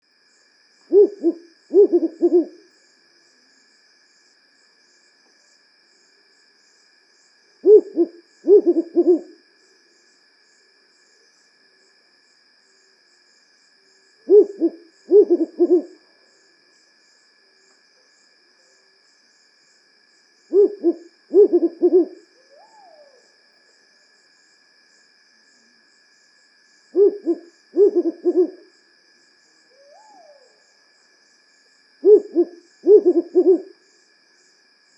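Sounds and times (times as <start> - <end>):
owl hooting: 0.9 - 2.6, 7.6 - 9.4, 14.2 - 16.0, 20.5 - 23.2, 26.9 - 28.7, 29.7 - 30.6, 32.0 - 33.7.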